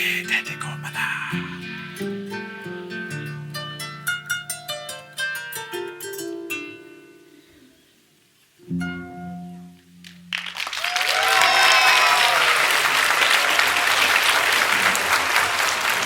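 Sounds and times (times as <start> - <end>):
plucked kora chord: 1.5 - 7.5, 8.6 - 10.3
audience applauding: 10.3 - 16.0
audience whooping and cheering: 10.6 - 16.0.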